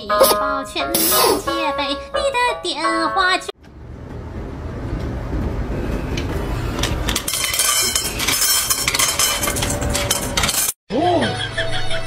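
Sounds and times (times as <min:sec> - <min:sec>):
hard objects clattering and clinking: 0:06.8 - 0:10.8.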